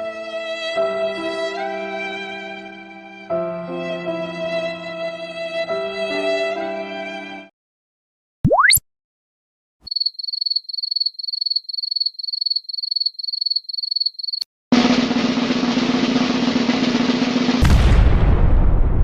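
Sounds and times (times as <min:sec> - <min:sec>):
snare drum roll: 0:14.7 - 0:18.6.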